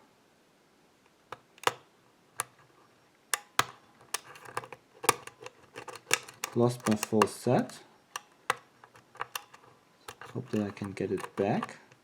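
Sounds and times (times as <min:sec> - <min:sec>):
lock pick metallic clicks: 0:01.3 - 0:02.7, 0:03.3 - 0:07.4, 0:08.1 - 0:12.0.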